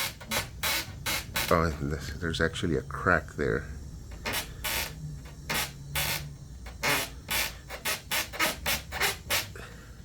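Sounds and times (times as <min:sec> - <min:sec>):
furniture joint creaking: 0:00.0 - 0:02.0, 0:04.1 - 0:09.5.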